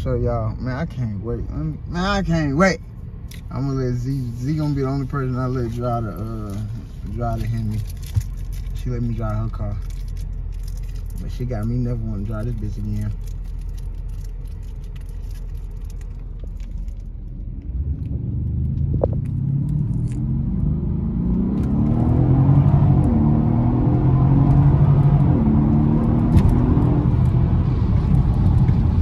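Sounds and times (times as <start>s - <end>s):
car engine accelerating hard: 17.6s - 29.0s.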